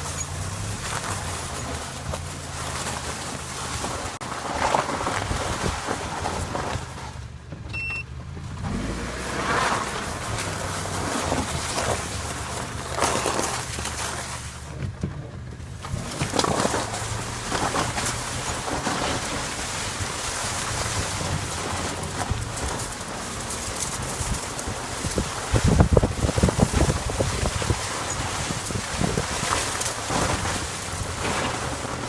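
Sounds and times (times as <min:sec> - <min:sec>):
high squeal: 0:00.0 - 0:00.7
car front end creaking: 0:00.0 - 0:32.0
engine running: 0:00.0 - 0:32.0.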